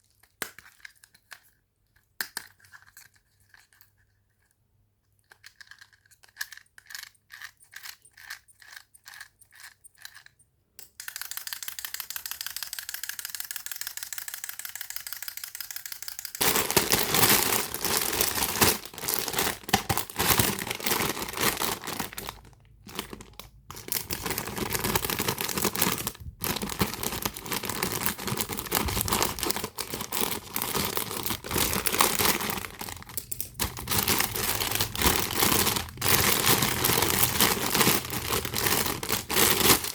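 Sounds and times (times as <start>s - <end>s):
wind-up key ratcheting clicks: 11.0s - 16.4s
plastic packaging crinkling: 16.4s - 39.9s.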